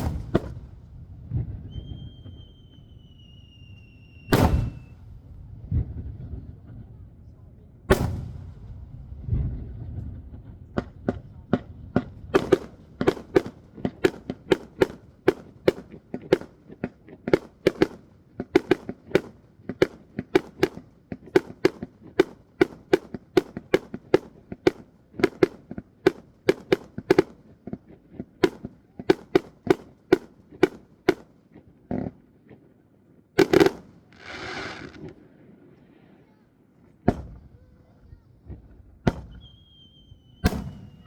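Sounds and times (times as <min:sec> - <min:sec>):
firework shells bursting: 0:04.3 - 0:05.1, 0:12.4 - 0:16.7, 0:17.3 - 0:27.4, 0:33.4 - 0:35.2, 0:40.4 - 0:41.0.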